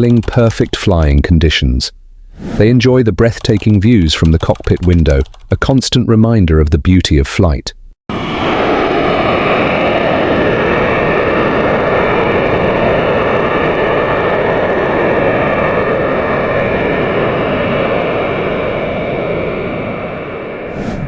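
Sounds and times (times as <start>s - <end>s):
jet engines rushing: 8.1s - 21.0s.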